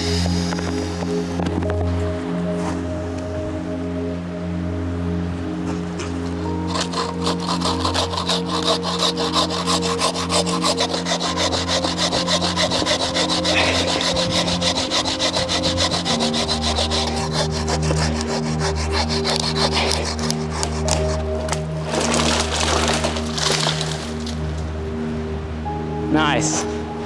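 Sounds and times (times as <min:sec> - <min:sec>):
background music with held notes: 0:00.0 - 0:27.0
hand saw sawing: 0:06.4 - 0:24.4.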